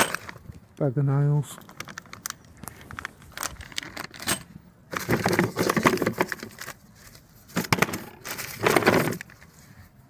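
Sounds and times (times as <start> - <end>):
metal tools rattling in tool box: 0.0 - 0.4, 3.3 - 6.6, 7.5 - 9.2.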